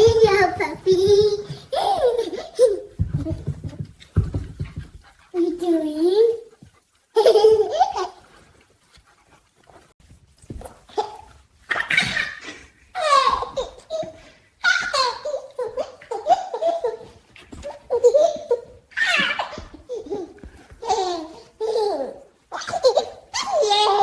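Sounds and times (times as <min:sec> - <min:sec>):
baby laughing: 0:00.0 - 0:03.5, 0:07.2 - 0:08.2, 0:11.0 - 0:24.0.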